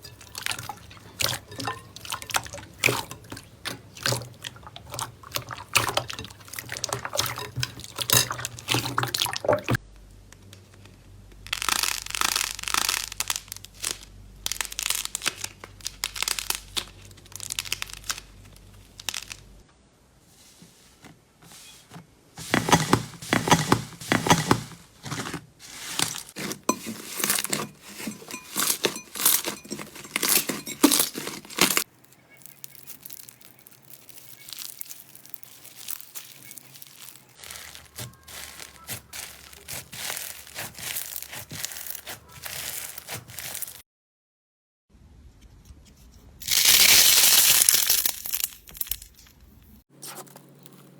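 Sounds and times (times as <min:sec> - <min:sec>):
slime crackling and popping: 0:11.4 - 0:19.6, 0:28.6 - 0:43.8, 0:46.4 - 0:49.2.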